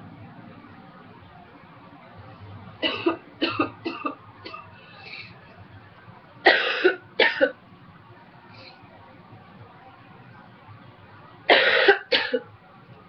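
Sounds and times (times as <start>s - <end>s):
woman coughing: 2.8s - 4.7s, 6.5s - 7.6s, 11.5s - 12.4s.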